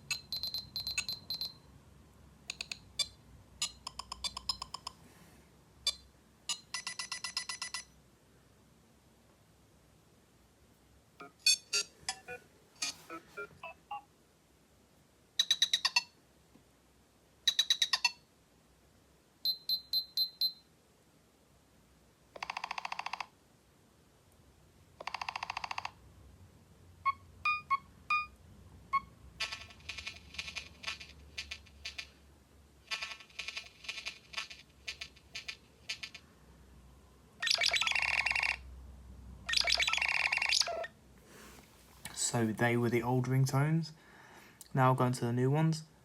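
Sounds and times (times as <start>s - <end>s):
electronic ringtone beeps: 0.0s - 1.7s, 2.5s - 5.0s, 5.9s - 7.9s, 11.2s - 14.1s, 15.4s - 16.2s, 17.5s - 18.2s, 19.5s - 20.6s, 25.0s - 26.0s, 27.0s - 31.0s, 37.4s - 38.6s, 39.5s - 40.9s.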